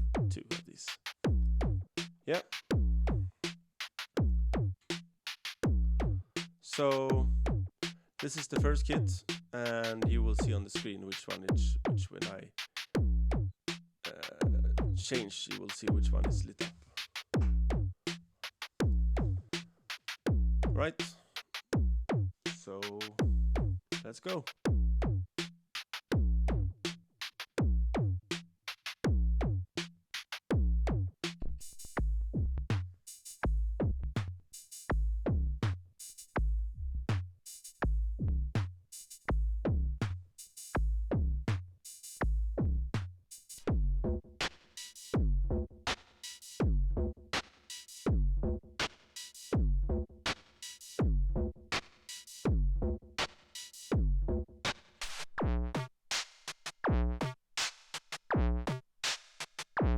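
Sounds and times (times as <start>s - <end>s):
punchy kick drum: 0.0s - 0.4s, 1.2s - 1.8s, 2.7s - 3.3s, 4.2s - 4.7s, 5.6s - 6.2s, 7.1s - 7.7s, 8.5s - 9.2s, 10.0s - 10.7s, 11.5s - 12.0s, 13.0s - 13.5s, 14.3s - 15.1s, 15.8s - 16.5s, 17.3s - 17.9s, 18.8s - 19.4s, 20.3s - 21.0s, 21.7s - 22.3s, 23.1s - 23.8s, 24.6s - 25.2s, 26.1s - 26.7s, 27.6s - 28.2s, 29.0s - 29.6s, 30.5s - 32.8s, 33.4s - 34.2s, 34.9s - 35.7s, 37.8s - 38.6s, 39.3s - 40.1s, 40.8s - 41.6s, 42.2s - 43.0s, 43.7s - 44.2s, 45.2s - 45.7s, 46.6s - 47.1s, 48.1s - 48.6s, 49.5s - 50.0s, 51.0s - 51.5s, 52.4s - 53.0s, 53.9s - 54.4s, 56.8s - 57.2s, 58.3s - 58.7s
drum machine beat: 0.0s - 29.6s, 37.5s - 59.9s
hi-hat hits: 6.4s - 7.1s, 7.8s - 8.7s, 9.3s - 11.5s, 15.0s - 17.6s, 38.9s - 39.4s, 44.4s - 45.2s, 47.4s - 48.2s, 48.8s - 49.6s, 50.3s - 51.1s, 51.8s - 52.6s.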